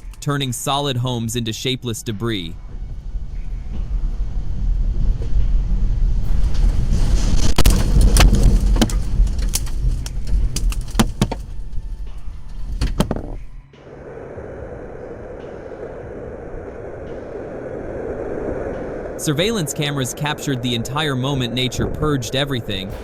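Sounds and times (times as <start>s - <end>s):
steady noise: 0.0s - 23.0s
tornado winds rumbling: 0.0s - 23.0s
debris banging and rattling: 3.3s - 13.6s.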